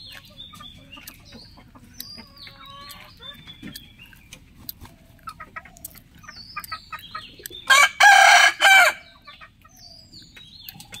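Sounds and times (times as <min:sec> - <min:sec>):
chicken clucking: 0:00.0 - 0:11.0
rooster crowing: 0:07.7 - 0:09.1.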